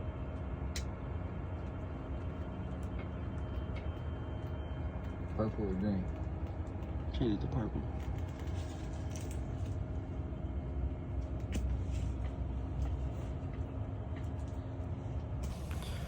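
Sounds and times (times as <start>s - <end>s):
faint hum: 0.0s - 16.0s
low rumble: 15.4s - 16.0s.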